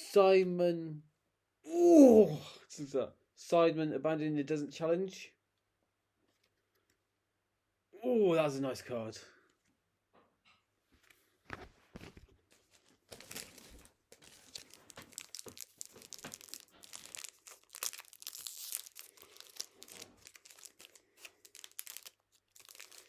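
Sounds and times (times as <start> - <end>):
plastic wrapper crinkling and tearing: 12.0 - 23.0.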